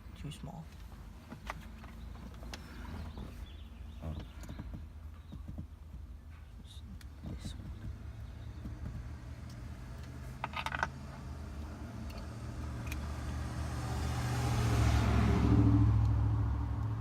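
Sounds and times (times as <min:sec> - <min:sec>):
motor vehicle passing by: 0:07.8 - 0:17.0.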